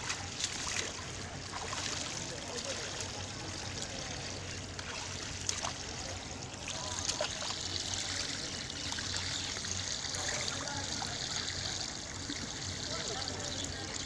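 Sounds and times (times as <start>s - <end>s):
shallow river water trickling: 0.0s - 14.0s.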